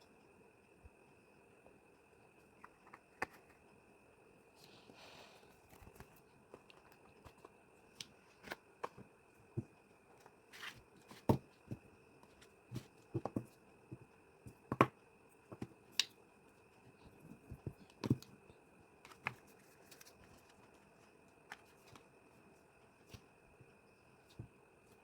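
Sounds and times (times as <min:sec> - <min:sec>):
faint high whine: 0:00.0 - 0:25.0.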